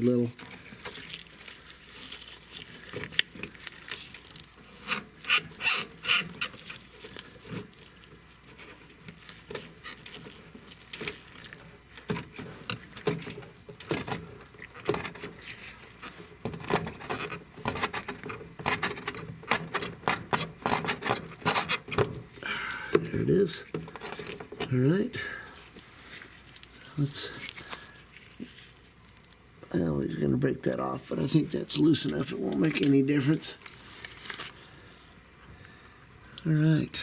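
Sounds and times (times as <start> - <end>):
hand tools scraping on metal: 4.8 - 6.5.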